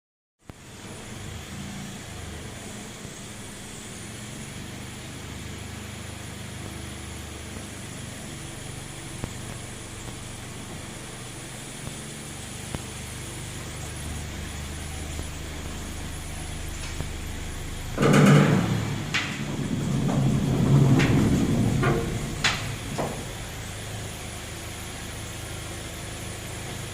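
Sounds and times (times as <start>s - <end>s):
exhaust hiss: 0.5s - 26.9s
car engine humming: 0.8s - 26.9s
sharp ticks from exhaust: 6.0s - 26.9s.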